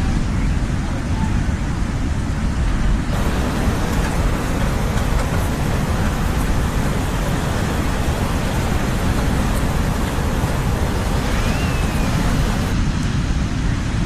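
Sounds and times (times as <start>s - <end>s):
ocean waves roaring: 3.1s - 13.5s.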